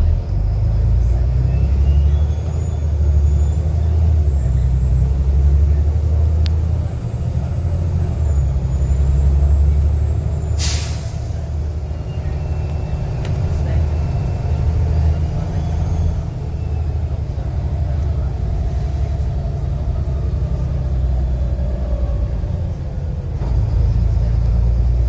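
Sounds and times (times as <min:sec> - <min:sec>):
diesel bus engine running: 0:00.0 - 0:25.0
brake air hiss: 0:10.6 - 0:11.6.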